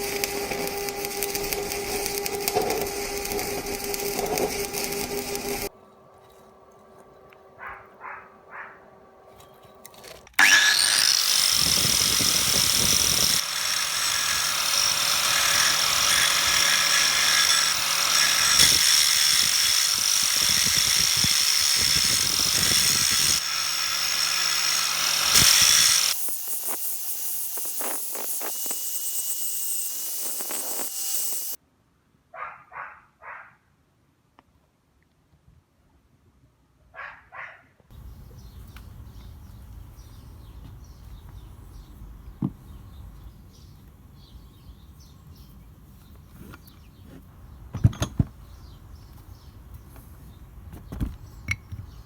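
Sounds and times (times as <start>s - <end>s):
power tool whining: 0.0s - 5.7s, 10.3s - 31.6s.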